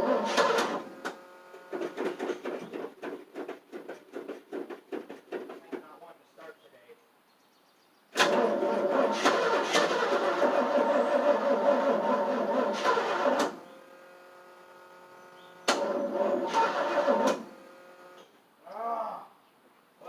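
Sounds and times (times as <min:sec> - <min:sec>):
starter cranking engine: 0:00.0 - 0:05.6, 0:08.2 - 0:13.7, 0:15.4 - 0:18.2.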